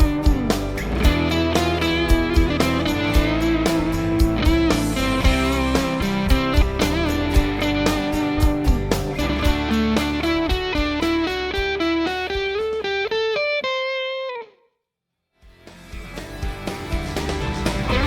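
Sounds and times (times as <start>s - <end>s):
drums and bass: 0.0s - 13.0s, 15.4s - 18.0s
overdriven electric guitar run: 0.0s - 14.5s, 15.8s - 18.0s.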